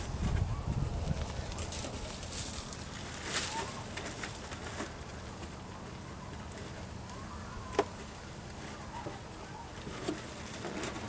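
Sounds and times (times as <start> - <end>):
handling rustle: 0.0 - 6.9
faint short bird calls: 7.0 - 8.0.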